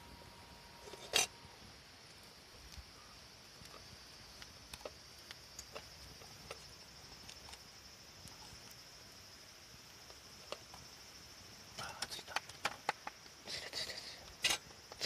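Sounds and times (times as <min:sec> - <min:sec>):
sharp clicks and ticks: 0:11.9 - 0:13.4.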